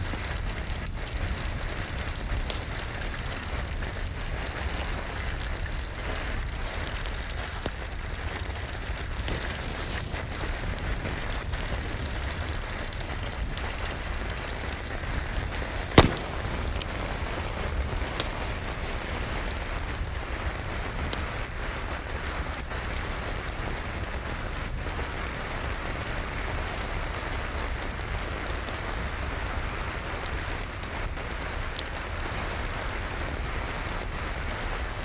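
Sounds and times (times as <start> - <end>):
steady rain falling: 0.0 - 35.0
wood fire crackling: 5.7 - 22.2
sharp pop of fire: 9.2 - 11.6, 15.4 - 18.8.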